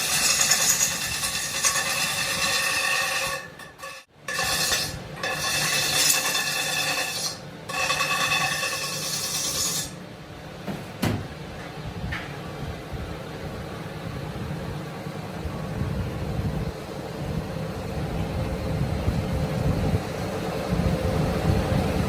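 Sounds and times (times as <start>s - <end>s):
angle grinder grinding metal: 0.0s - 10.0s
knock: 10.7s - 11.3s.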